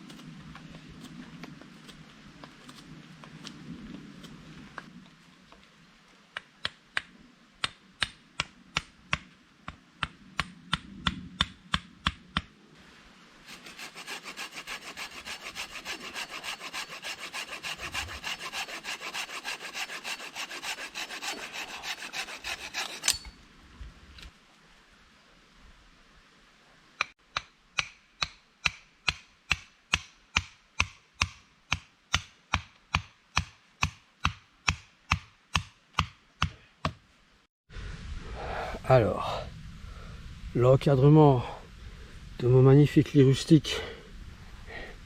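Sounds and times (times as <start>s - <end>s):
hand saw cutting branch: 13.5s - 23.4s.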